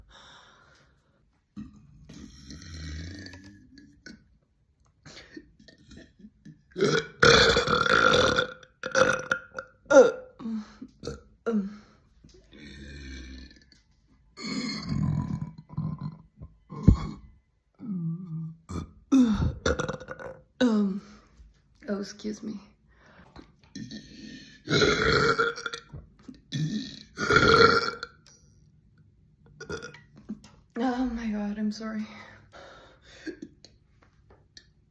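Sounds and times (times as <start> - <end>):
woman burping: 1.6 - 4.4, 5.0 - 11.7, 12.5 - 13.7, 14.4 - 20.9, 23.7 - 28.4, 29.6 - 30.4.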